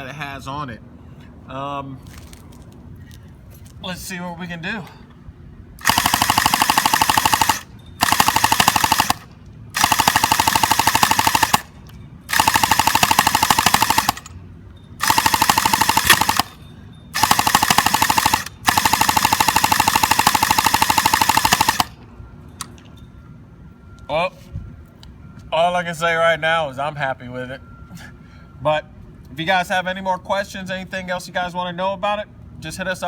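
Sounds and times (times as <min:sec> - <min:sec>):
airsoft machine gun bursts: 0:05.8 - 0:14.3, 0:15.0 - 0:16.6, 0:17.2 - 0:22.0.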